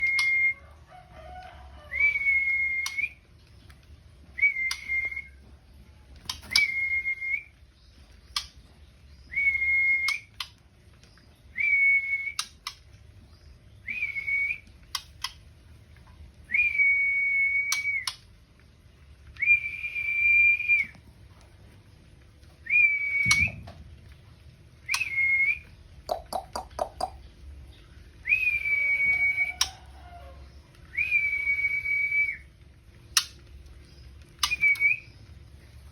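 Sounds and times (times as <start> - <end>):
bird sharp ticks: 26.1 - 27.2
bird whistling steady note: 28.2 - 30.2, 30.9 - 32.4, 34.4 - 35.2.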